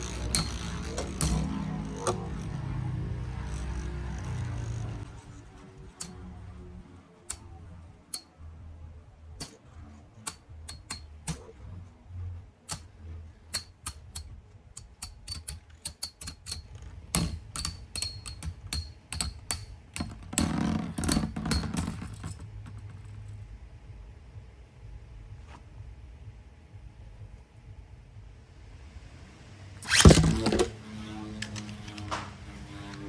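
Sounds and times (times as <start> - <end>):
spinning tops humming: 0.0 - 20.5
metal tops clacking together: 13.5 - 22.9.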